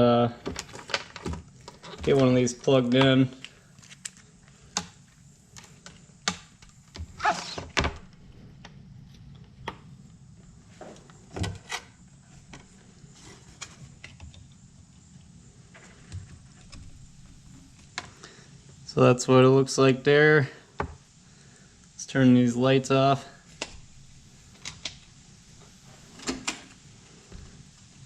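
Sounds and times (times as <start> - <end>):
scraping rustle: 7.0 - 7.8.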